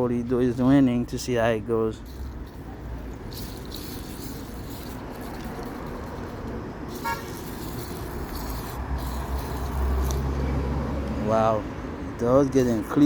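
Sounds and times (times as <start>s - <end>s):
distant car horn toot: 7.0s - 7.4s.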